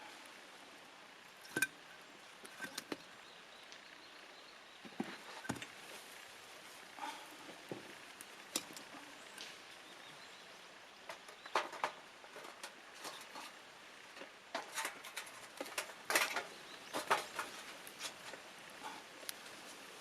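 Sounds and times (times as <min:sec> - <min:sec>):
wood fire crackling and popping: 0:04.9 - 0:10.1, 0:11.0 - 0:20.0.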